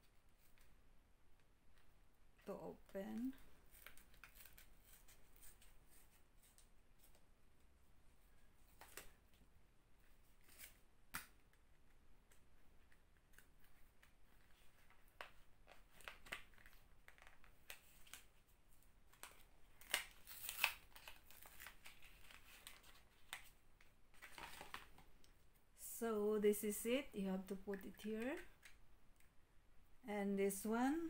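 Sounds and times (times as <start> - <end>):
packaging crinkling: 19.1 - 23.5.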